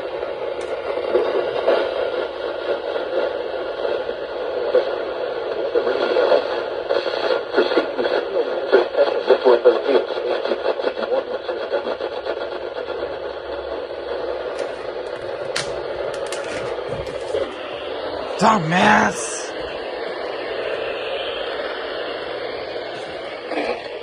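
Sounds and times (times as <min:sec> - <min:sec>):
radio static hiss: 0:00.9 - 0:20.5
indistinct wavering radio sound: 0:16.7 - 0:24.0.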